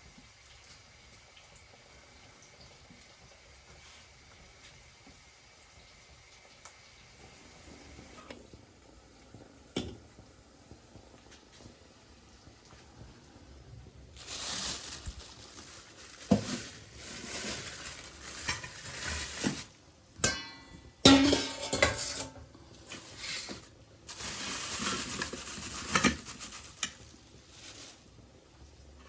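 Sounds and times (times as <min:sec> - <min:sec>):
utensil scraping food in pan: 0:21.1 - 0:27.0.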